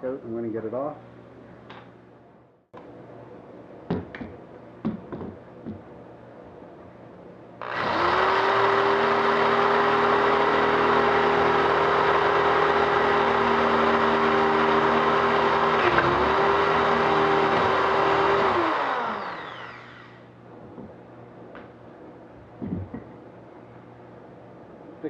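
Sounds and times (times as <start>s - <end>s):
electric drill whining: 7.6s - 20.3s.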